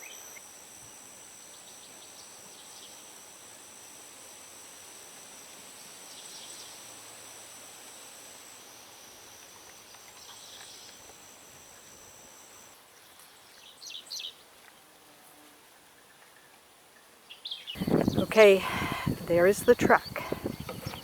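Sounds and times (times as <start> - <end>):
insects trilling: 0.0 - 14.5, 17.4 - 21.0
bird chirps: 17.3 - 21.0.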